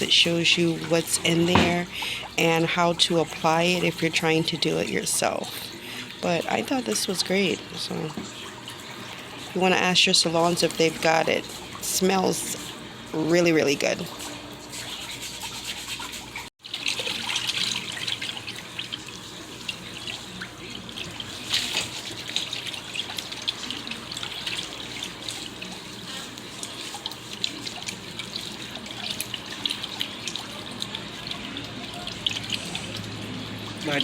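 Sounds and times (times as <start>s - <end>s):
water splashing in a basin: 0.0s - 34.0s.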